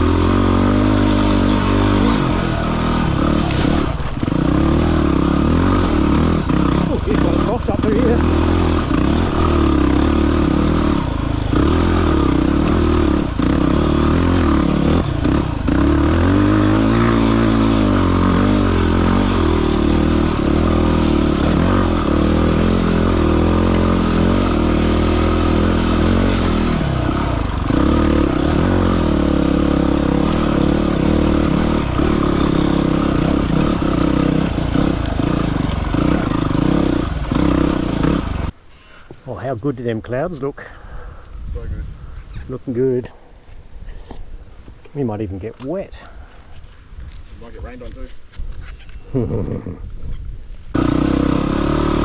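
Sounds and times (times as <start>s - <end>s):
dirt bike engine revving: 0.0s - 38.6s, 50.7s - 52.0s.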